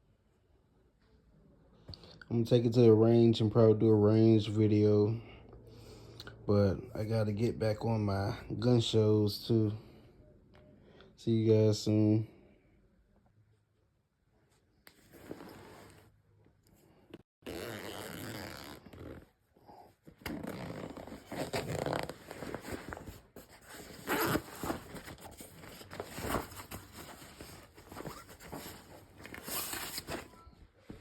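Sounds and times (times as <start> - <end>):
fabric rustling and scraping: 15.0 - 16.2, 17.5 - 31.0
zipper being pulled: 15.1 - 16.1, 17.4 - 19.4, 20.1 - 25.2, 28.0 - 28.3.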